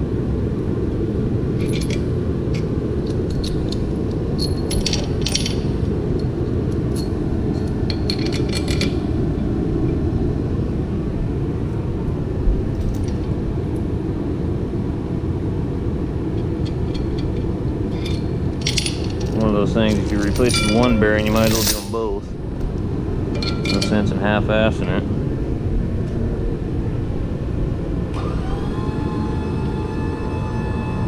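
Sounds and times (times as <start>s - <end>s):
steady low rumble: 0.0s - 31.0s
steel parts clinking together: 1.6s - 5.8s, 6.9s - 9.0s, 16.6s - 22.2s, 23.4s - 24.2s.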